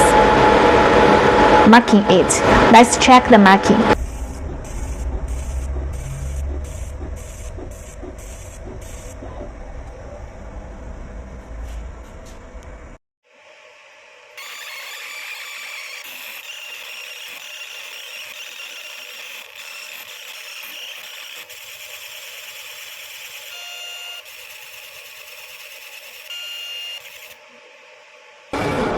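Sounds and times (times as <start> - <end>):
laser marking machine hiss: 4.0 - 9.2, 14.4 - 27.4.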